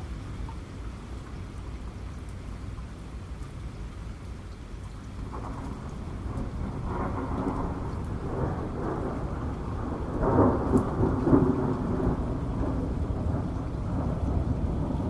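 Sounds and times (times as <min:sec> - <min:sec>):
steady rain: 0:00.0 - 0:15.0
raindrop ticks: 0:00.4 - 0:15.0
thunder rumbling: 0:05.2 - 0:15.0.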